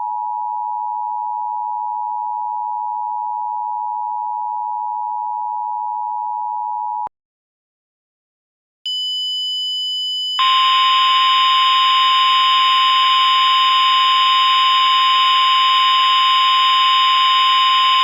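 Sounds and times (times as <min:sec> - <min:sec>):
harsh noisy alarm tone: 0:10.4 - 0:18.0.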